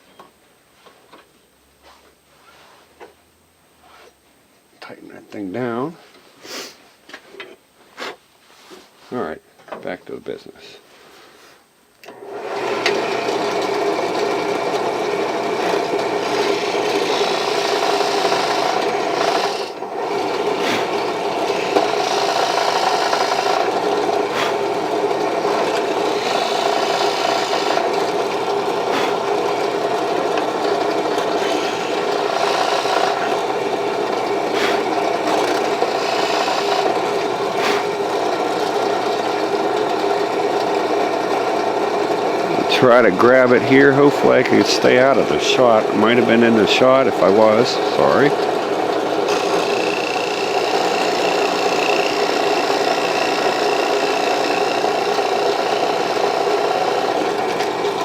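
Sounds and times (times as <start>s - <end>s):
electric drill boring into wood: 12.0s - 58.0s.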